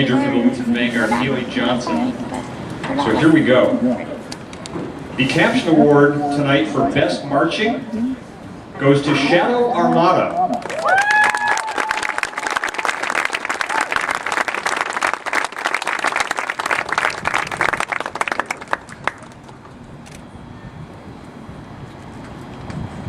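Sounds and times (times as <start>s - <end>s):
rising whoop: 10.4s - 12.6s
audience clapping and cheering: 10.4s - 19.7s.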